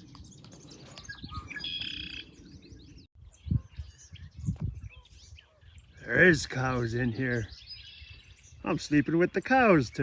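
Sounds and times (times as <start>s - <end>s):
songbirds chirping: 0.0s - 10.0s.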